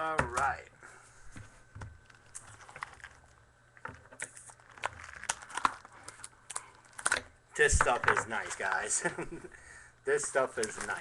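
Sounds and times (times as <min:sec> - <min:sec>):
wrapper rustling: 0:02.0 - 0:07.2
cardboard and foil wrapper clicks: 0:04.1 - 0:07.3.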